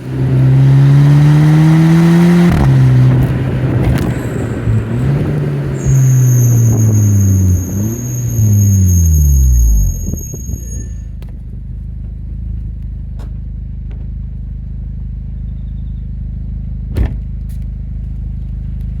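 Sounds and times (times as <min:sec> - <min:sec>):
car engine idling: 0:02.6 - 0:15.3.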